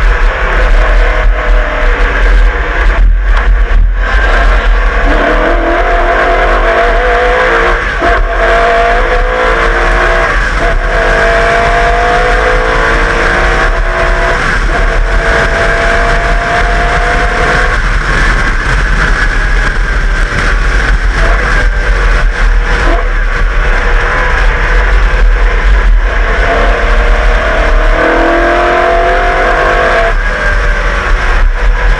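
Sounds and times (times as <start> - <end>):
racing car engine at full throttle: 0.0 - 31.9.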